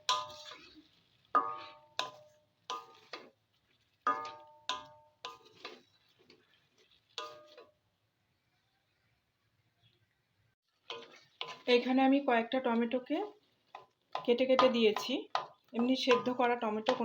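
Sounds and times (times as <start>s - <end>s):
utensil knocking against metal pan: 14.2s - 17.0s.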